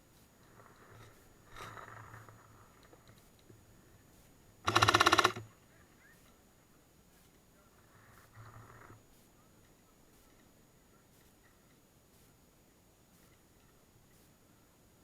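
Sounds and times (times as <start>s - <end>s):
airsoft gun full-auto burst: 4.7s - 5.5s.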